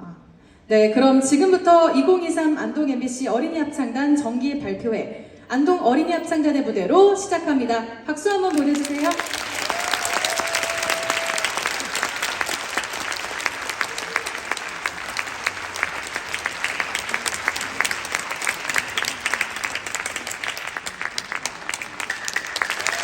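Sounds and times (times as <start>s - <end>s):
audience applauding: 8.4s - 23.0s.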